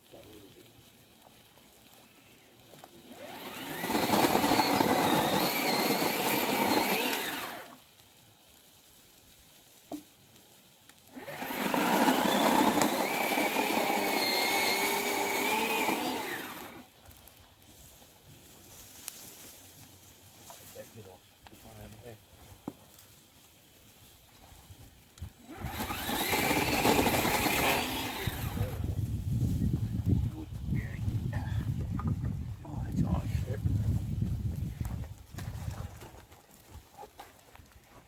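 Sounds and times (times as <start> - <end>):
small motor whirring: 3.0 - 7.8, 11.1 - 16.9, 25.2 - 28.9.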